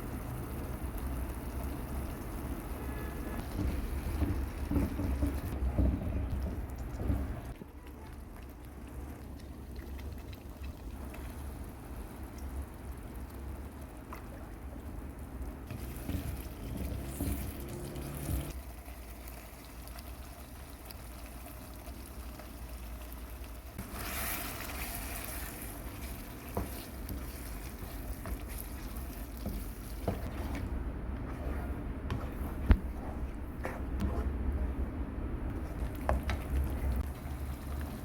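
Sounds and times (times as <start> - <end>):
water running and trickling: 15.7 - 30.7.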